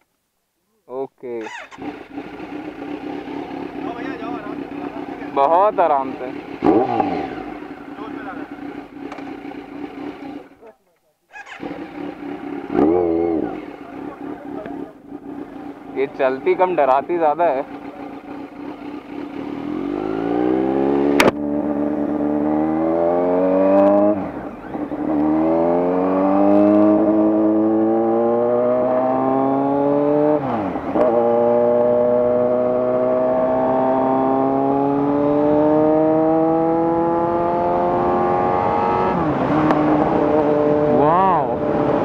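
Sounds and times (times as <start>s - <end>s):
motorcycle engine accelerating: 1.4s - 42.0s
sharp click: 9.1s - 9.3s, 21.2s - 21.4s.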